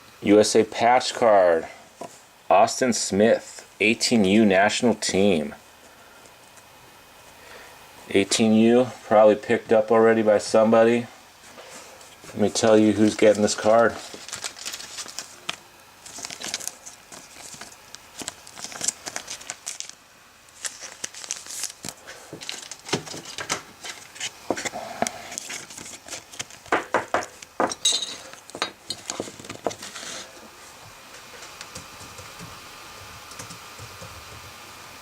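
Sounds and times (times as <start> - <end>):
faint steady hiss: 0.0 - 26.2
plastic and cards crinkling: 12.1 - 30.3.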